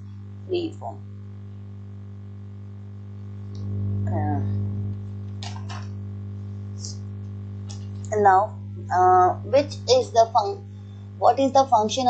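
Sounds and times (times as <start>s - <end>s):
electrical mains hum: 0.0s - 12.0s
murmured voice: 4.1s - 4.7s.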